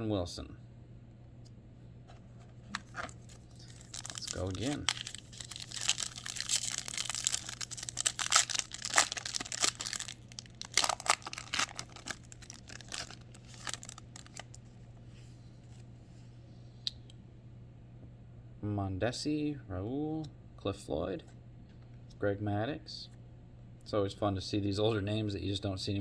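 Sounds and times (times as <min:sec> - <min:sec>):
low steady hum: 0:00.0 - 0:26.0
wrapper tearing and crinkling: 0:02.7 - 0:14.6.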